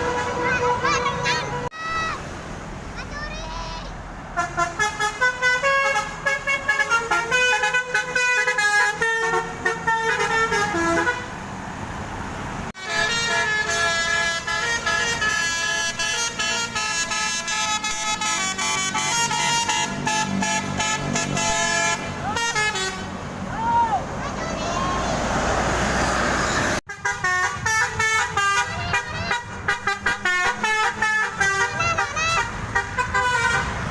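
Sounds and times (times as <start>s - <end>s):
musical bus horn playing tune: 0.0s - 1.8s, 4.4s - 11.4s, 12.8s - 23.2s, 26.8s - 33.9s.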